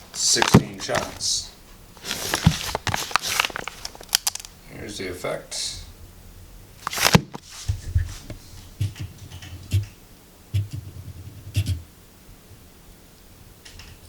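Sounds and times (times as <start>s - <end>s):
handling thumps and rattles: 0.0s - 1.4s, 2.0s - 4.5s.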